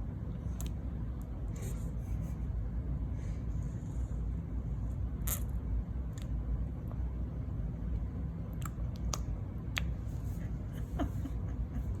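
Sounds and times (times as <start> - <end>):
steady low hum: 0.0 - 12.0
baby mouth clicks and lip smacks: 8.5 - 10.0.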